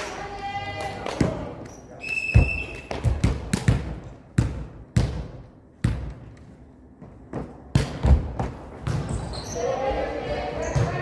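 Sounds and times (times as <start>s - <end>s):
whistle tone: 2.0s - 2.9s
volleyball being struck and bouncing: 2.4s - 6.3s, 7.3s - 9.3s.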